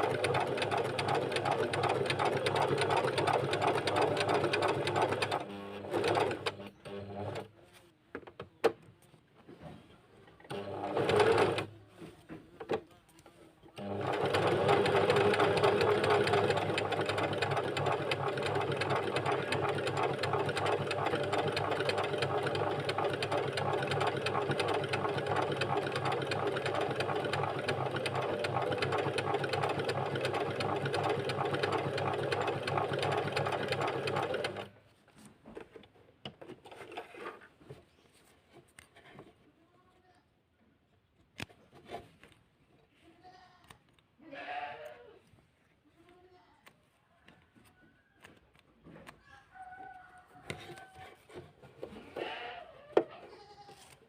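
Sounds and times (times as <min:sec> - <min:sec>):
sewing machine stitching: 0:00.0 - 0:07.5, 0:10.5 - 0:11.7, 0:13.8 - 0:34.8.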